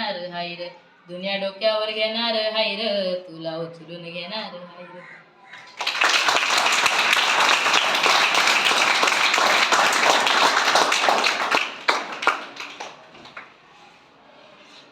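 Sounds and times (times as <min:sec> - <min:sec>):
people clapping: 0:05.5 - 0:13.6.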